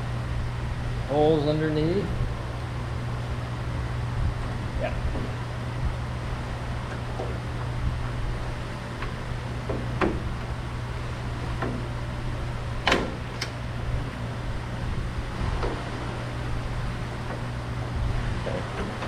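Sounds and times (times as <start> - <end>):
steady low hum: 0.0 - 19.0
knocks of sheet-metal panel: 9.6 - 10.3, 12.8 - 13.3.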